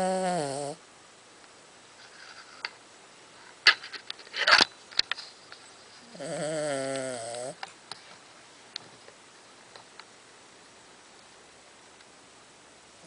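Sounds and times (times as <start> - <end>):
dog snoring: 0.0 - 0.8, 6.0 - 7.6.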